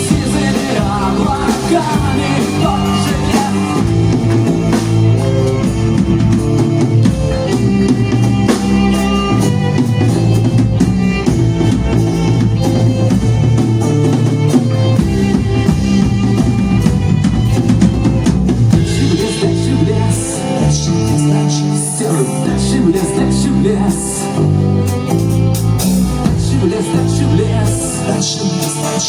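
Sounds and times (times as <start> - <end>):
drum hits: 0.0 - 19.6
bass line: 0.0 - 29.0
live band playing: 0.0 - 29.0.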